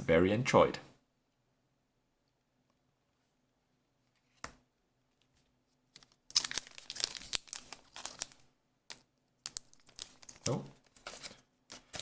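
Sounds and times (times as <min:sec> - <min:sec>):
foil wrapper crinkling: 0:06.0 - 0:12.0.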